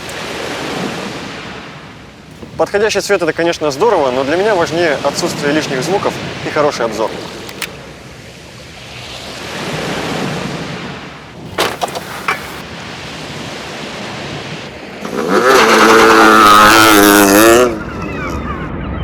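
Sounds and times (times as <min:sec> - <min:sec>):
soft surf-like noise: 0:00.0 - 0:16.4
clicks: 0:07.0 - 0:07.8
windscreen wipers squealing on glass: 0:15.0 - 0:18.5.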